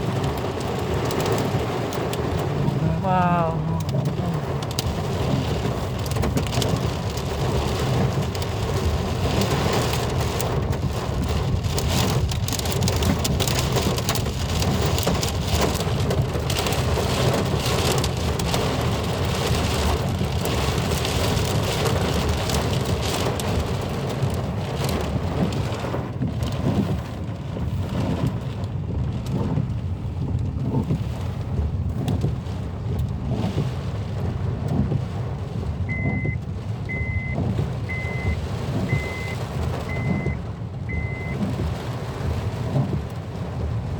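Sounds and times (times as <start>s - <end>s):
floodwater rushing: 0.0s - 9.8s
heavy rain pouring: 0.0s - 43.9s.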